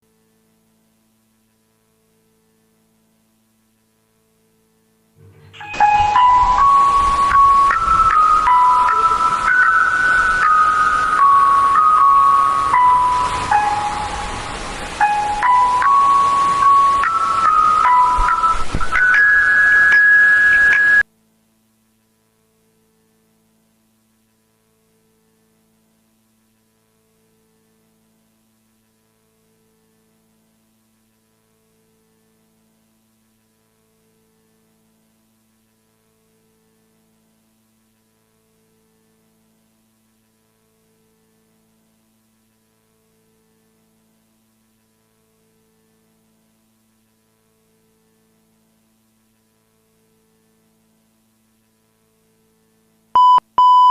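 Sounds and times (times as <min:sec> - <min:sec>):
faint low hum: 0:00.0 - 0:19.2
faint pulsing tone: 0:04.0 - 0:21.1.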